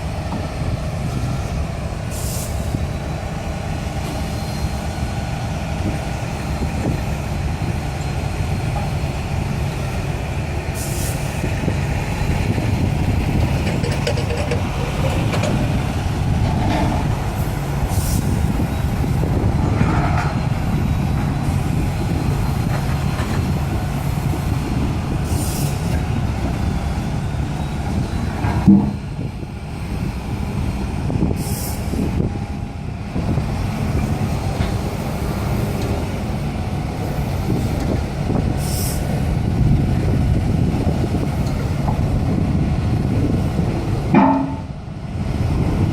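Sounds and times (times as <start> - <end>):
diesel engine: 0.0 - 45.9
vibratory pile driver drone: 11.4 - 31.3
sharp knock: 44.2 - 44.7.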